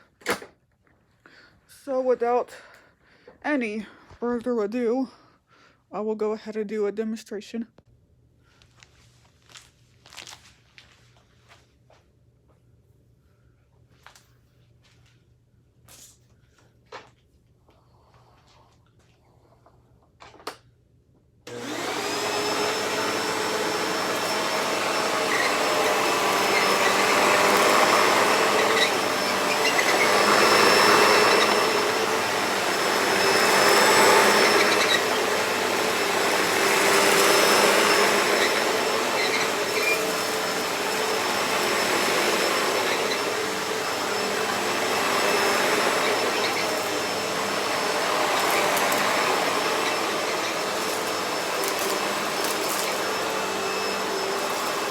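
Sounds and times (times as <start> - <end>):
vacuum cleaner motor whining: 21.5 - 54.9.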